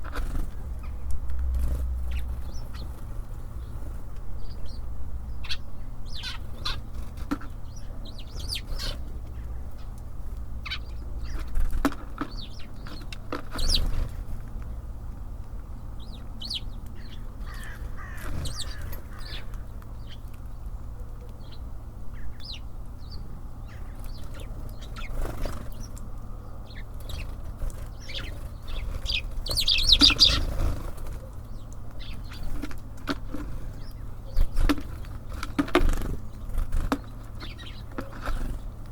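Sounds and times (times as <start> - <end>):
birds pecking: 0.0 - 38.9
steady low rumble: 0.0 - 38.9
high bird chirps: 16.0 - 20.3, 26.6 - 30.7.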